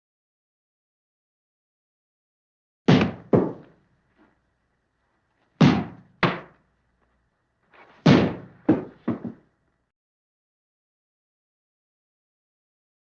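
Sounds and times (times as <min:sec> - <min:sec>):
heavy slams: 0:08.0 - 0:09.4.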